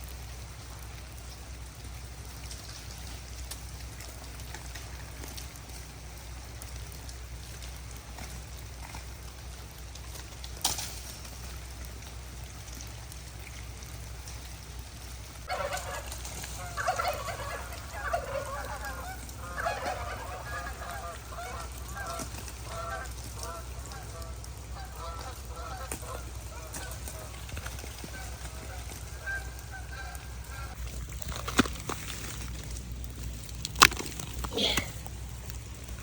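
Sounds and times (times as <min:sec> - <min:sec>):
geese honking: 0:15.5 - 0:32.4
sharp crack: 0:30.8 - 0:36.0.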